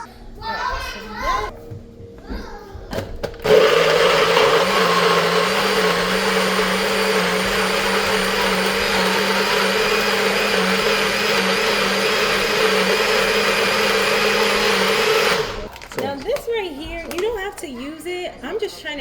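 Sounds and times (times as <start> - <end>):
blender running: 3.4 - 15.7.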